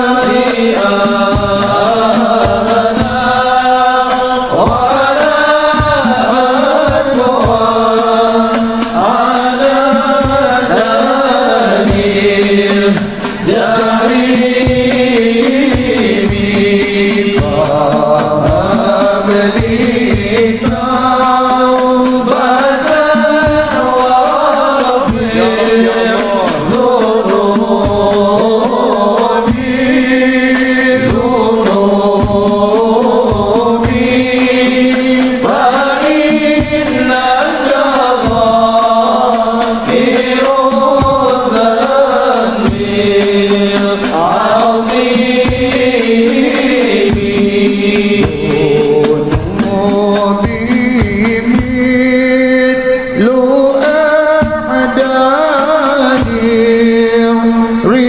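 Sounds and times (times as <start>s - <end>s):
devotional chanting: 0.0s - 58.0s
drum beats: 0.0s - 58.0s.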